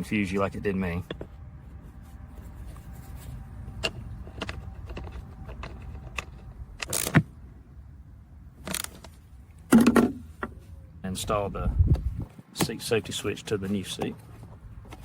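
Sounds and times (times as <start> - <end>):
steady low rumble: 0.0 - 9.7, 10.3 - 12.3.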